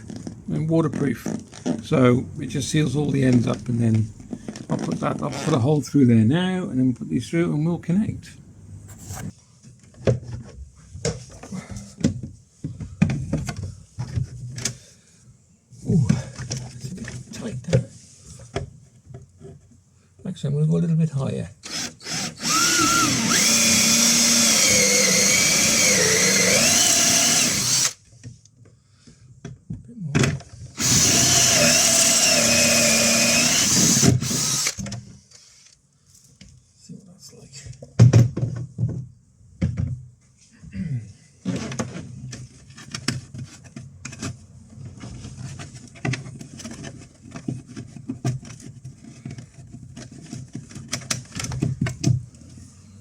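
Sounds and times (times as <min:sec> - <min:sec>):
electric drill whining: 0:21.6 - 0:28.0, 0:30.8 - 0:34.8.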